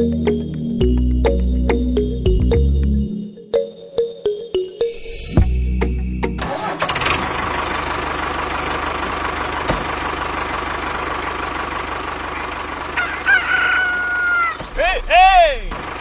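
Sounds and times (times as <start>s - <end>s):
loud long animal call: 12.4s - 14.6s.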